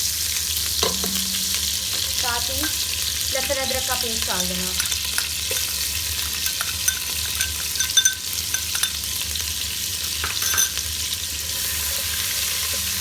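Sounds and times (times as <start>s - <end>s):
paste sizzling in butter: 0.0s - 13.0s
spoon clicking against pan: 4.7s - 5.8s, 6.4s - 9.2s.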